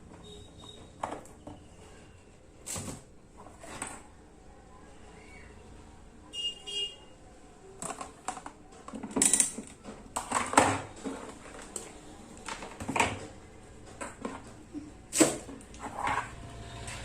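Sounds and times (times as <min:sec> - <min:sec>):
hard objects clicking and knocking: 0:07.8 - 0:16.5.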